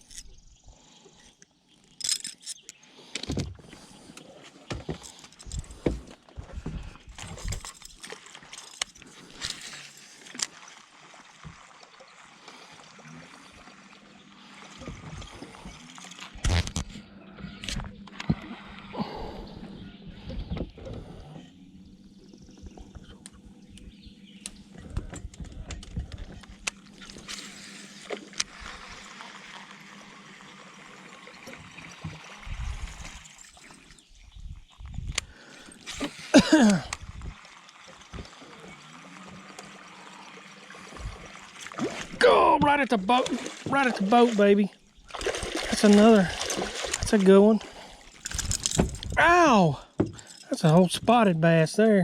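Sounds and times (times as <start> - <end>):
water gurgling and splashing: 6.6 - 17.0, 26.0 - 34.1, 35.3 - 49.9.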